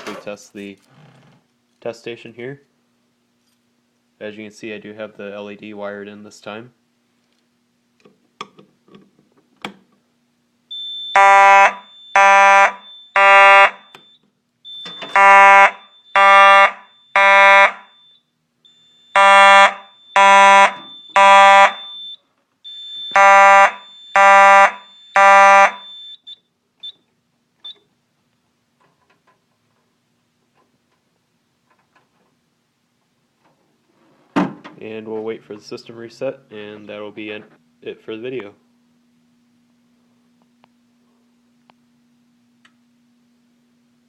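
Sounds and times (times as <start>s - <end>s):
fire alarm horn buzzing blasts: 10.7s - 26.5s.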